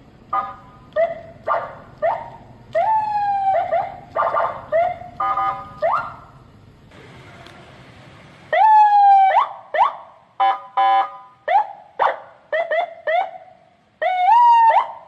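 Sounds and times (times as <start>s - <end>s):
electronic vehicle siren: 2.0s - 6.4s, 8.5s - 11.8s, 12.6s - 15.0s.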